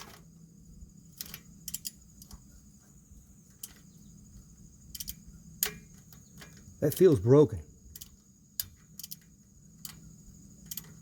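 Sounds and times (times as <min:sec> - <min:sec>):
socket wrench clicking on bolt: 0:01.2 - 0:02.4, 0:03.6 - 0:03.9, 0:04.9 - 0:07.1, 0:07.9 - 0:11.0.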